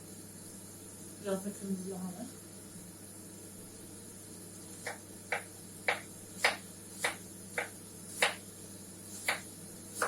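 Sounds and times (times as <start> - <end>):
knife chopping cabbage on board: 4.8 - 8.4, 9.1 - 10.0.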